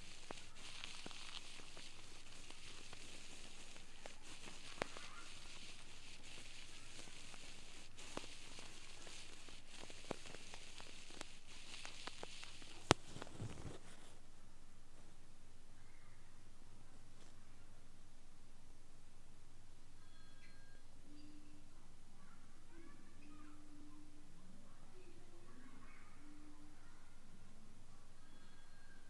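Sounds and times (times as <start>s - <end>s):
ear pick scratching in ear: 0.0s - 14.2s
small clicks: 0.0s - 14.2s
steady hiss: 0.0s - 29.0s.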